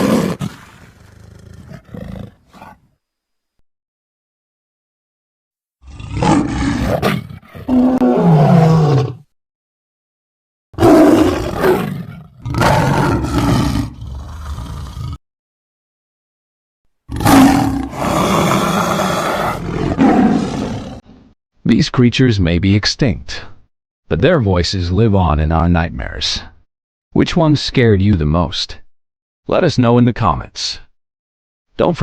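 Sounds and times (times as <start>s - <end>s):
big cat roaring: 0.0s - 2.8s, 5.8s - 9.3s, 10.8s - 15.2s, 17.1s - 21.1s.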